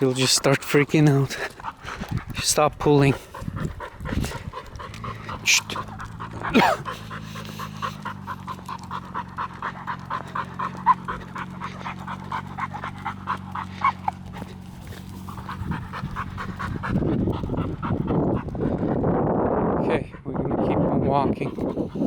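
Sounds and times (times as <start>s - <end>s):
dog panting: 0.0s - 22.0s
dog whining: 5.0s - 17.4s.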